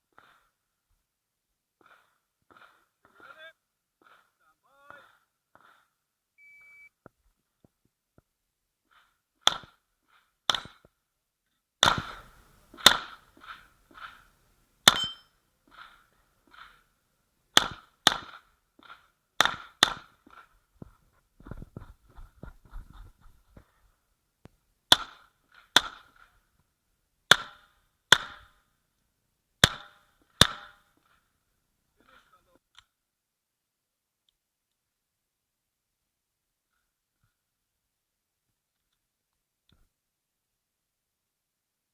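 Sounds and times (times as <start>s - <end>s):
pistol shots with echo: 11.8s - 13.2s, 14.9s - 15.2s.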